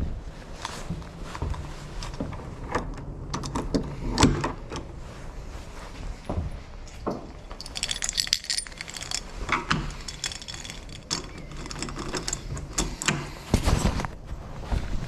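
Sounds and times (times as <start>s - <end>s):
small metal parts clinking: 6.9s - 13.1s.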